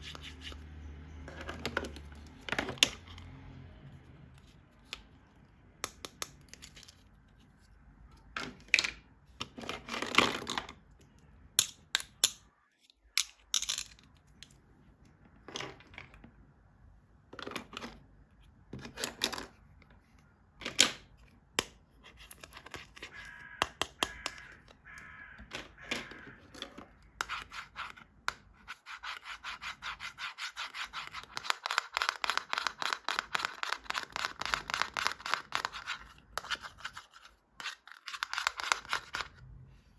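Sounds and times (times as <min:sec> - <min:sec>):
toy packaging being handled: 0:30.9 - 0:39.4.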